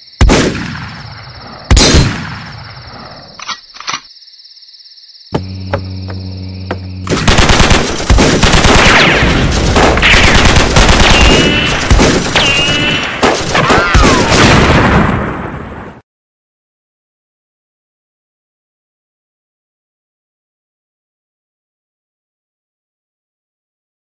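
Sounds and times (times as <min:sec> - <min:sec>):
low steady hum: 0:05.4 - 0:07.3
rapid machine-gun fire: 0:07.0 - 0:14.8.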